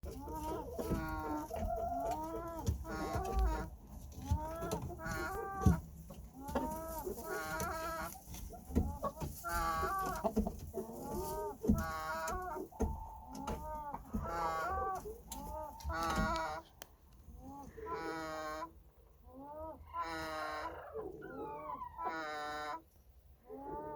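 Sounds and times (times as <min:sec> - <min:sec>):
chicken snoring: 0:17.7 - 0:18.7.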